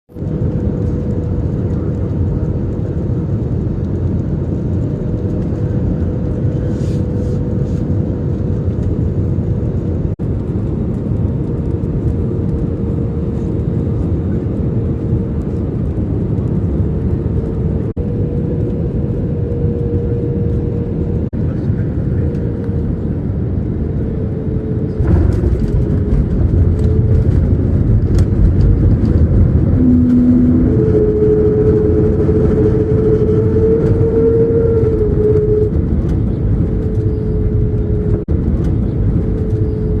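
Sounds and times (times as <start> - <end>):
jet engines rumbling: 0.1 - 40.0.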